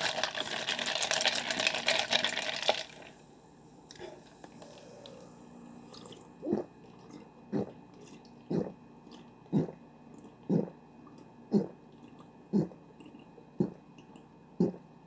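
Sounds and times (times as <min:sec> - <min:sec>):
person gulping drink: 0:03.9 - 0:14.9.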